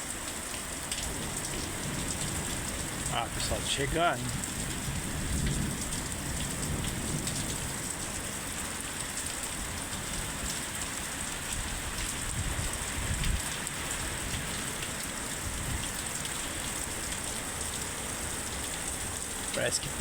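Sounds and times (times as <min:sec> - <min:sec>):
steady rain downpour: 0:00.0 - 0:20.0.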